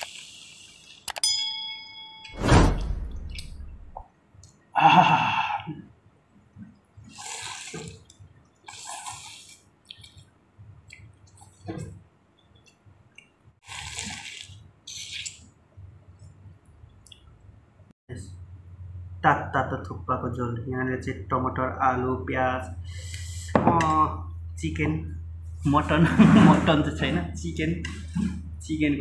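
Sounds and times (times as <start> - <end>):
wet slurps of broth: 7.1 - 10.2, 13.6 - 15.4.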